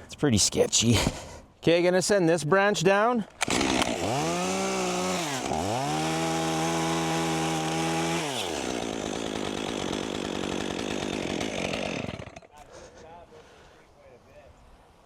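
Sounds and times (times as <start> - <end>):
chainsaw revving: 3.4 - 12.6.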